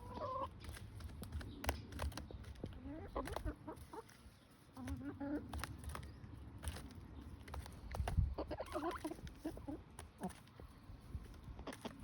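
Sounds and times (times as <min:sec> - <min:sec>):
hens clucking: 0:00.0 - 0:12.0.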